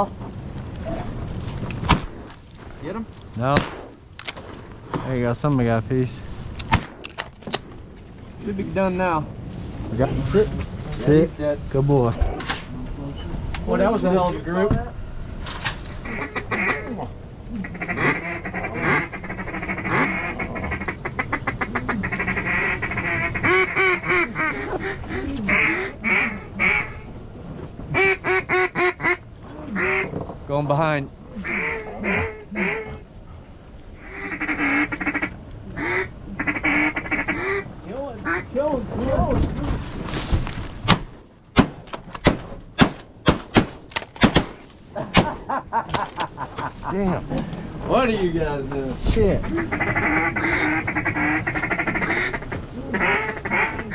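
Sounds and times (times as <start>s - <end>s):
shotgun shots: 3.5s - 4.5s, 40.9s - 44.6s
duck quacking: 16.0s - 27.0s, 29.8s - 30.1s, 31.4s - 33.0s, 34.0s - 38.5s, 49.4s - 53.9s.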